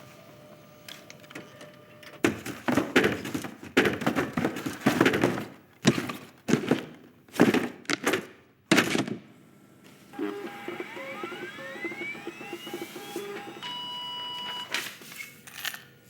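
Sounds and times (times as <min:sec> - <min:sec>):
heavy thunks and clattering knocks: 0:02.2 - 0:09.3.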